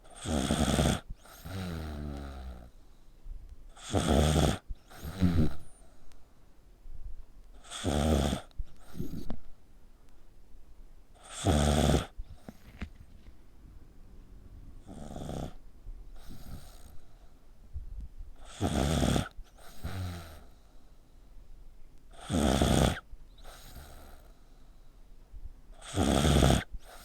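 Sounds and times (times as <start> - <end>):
pet snoring: 0.0 - 2.7, 3.7 - 5.9, 7.6 - 9.5, 11.2 - 13.3, 14.8 - 17.4, 18.4 - 20.6, 22.1 - 24.4, 25.8 - 27.0.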